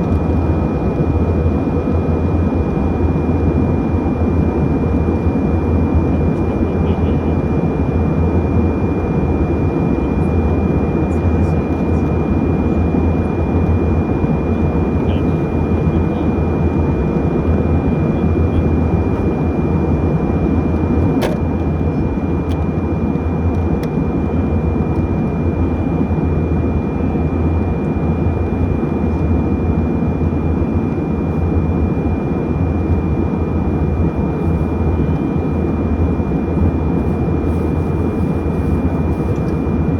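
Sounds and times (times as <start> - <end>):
airliner cabin engine drone: 0.0 - 39.9.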